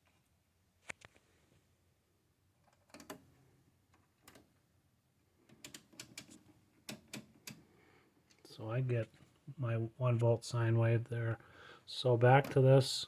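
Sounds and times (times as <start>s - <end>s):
small clicks and light knocks: 2.6s - 4.6s, 5.4s - 7.6s.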